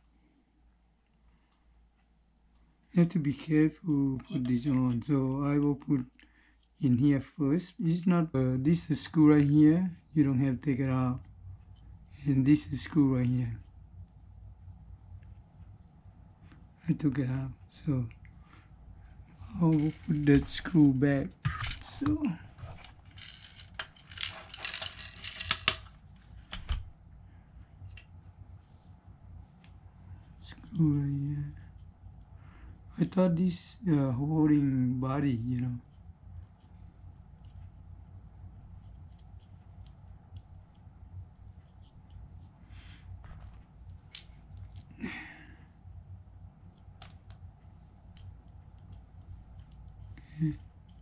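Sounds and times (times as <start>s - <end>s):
low steady hum: 0.0s - 51.0s
small plastic parts clicking and rattling: 21.4s - 26.8s.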